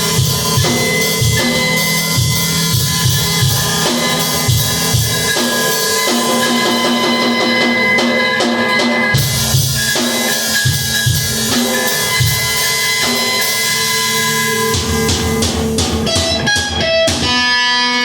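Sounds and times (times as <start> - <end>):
bass drum steady beat: 0.0 - 17.4
electric guitar ringing notes: 0.0 - 18.0
snare and cymbals: 0.0 - 18.0.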